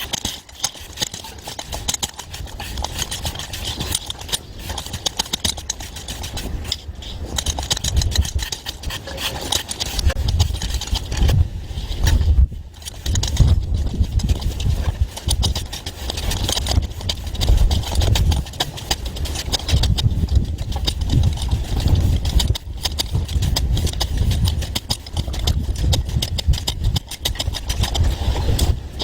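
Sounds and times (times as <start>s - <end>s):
concrete compactor rattling: 12.8s - 28.2s.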